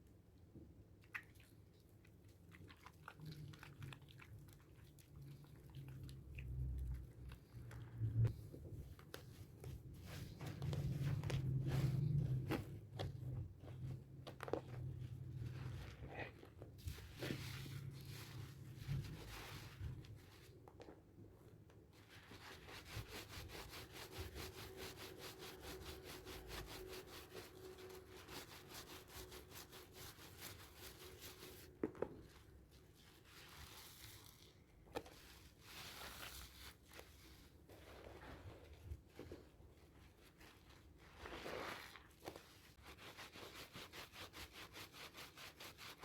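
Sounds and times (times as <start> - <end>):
soap rubbing strokes: 2.7 - 21.0, 21.9 - 46.0
soap scraping: 9.0 - 20.2, 33.1 - 39.5, 40.4 - 46.0.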